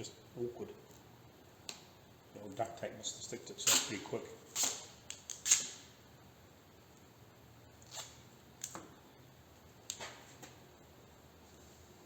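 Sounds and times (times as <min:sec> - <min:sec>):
duct tape rustling: 0:03.6 - 0:05.9, 0:07.8 - 0:08.8.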